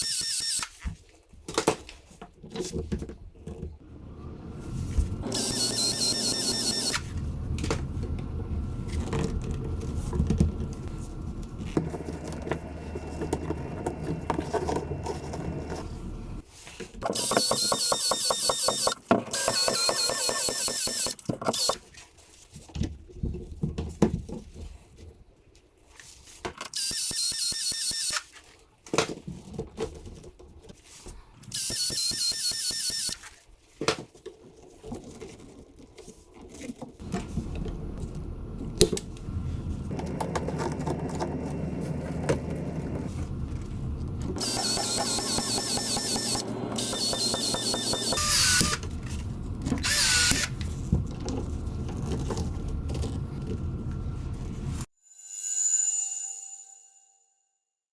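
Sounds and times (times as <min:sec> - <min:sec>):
power drill bursts: 0:00.0 - 0:00.8, 0:05.2 - 0:07.1, 0:17.2 - 0:21.8, 0:31.5 - 0:33.2, 0:44.4 - 0:48.8, 0:49.8 - 0:50.6
steady mechanical noise: 0:03.8 - 0:16.4, 0:37.0 - 0:54.8
drill squeal: 0:05.3 - 0:07.1, 0:17.2 - 0:21.8, 0:44.4 - 0:48.8, 0:49.8 - 0:50.5.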